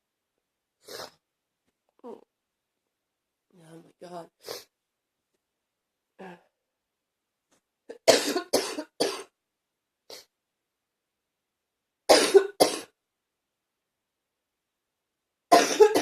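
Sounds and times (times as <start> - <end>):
person coughing: 7.9 - 9.3, 12.1 - 12.9, 15.5 - 16.0.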